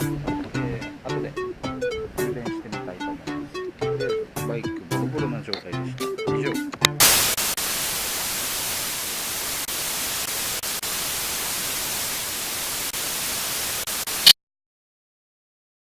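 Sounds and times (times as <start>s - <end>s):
static hiss: 7.0s - 14.4s.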